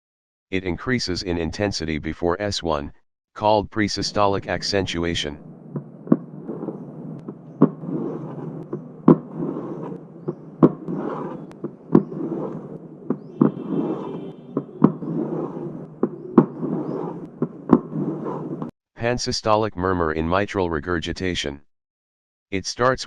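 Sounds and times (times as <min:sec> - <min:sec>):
heart clicks: 0:05.7 - 0:07.8.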